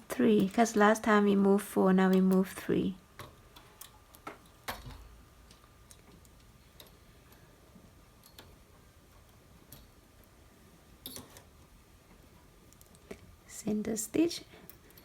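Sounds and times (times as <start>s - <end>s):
knitting machine needles clicking: 0.1s - 7.5s, 8.1s - 10.3s, 11.0s - 11.6s.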